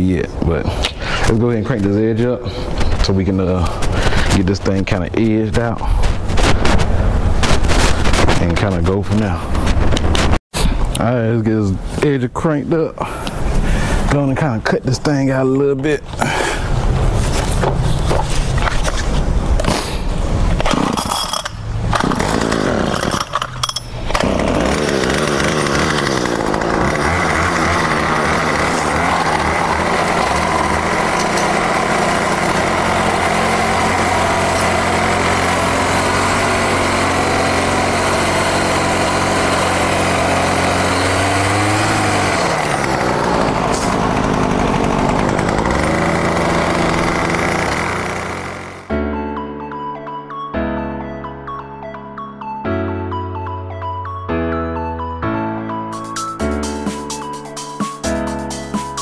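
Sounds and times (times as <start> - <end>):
lawn edger gas engine running: 20.6 - 48.9.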